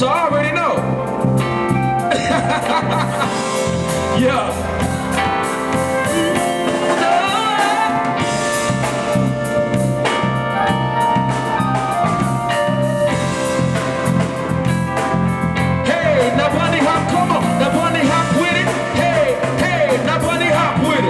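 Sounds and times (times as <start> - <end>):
zydeco band playing: 0.0 - 21.0.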